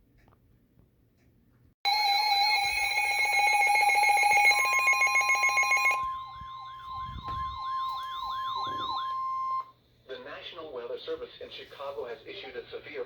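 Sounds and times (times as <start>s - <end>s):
falling siren wail: 1.9s - 9.7s
pulsing electronic alarm: 1.9s - 9.7s
weather radio alarm tone: 1.9s - 9.7s.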